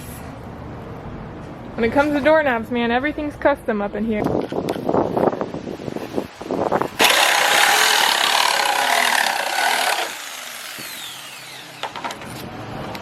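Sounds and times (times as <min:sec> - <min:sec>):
motor winding down whine: 0:07.0 - 0:12.0
power tool cutting plywood: 0:07.0 - 0:12.2.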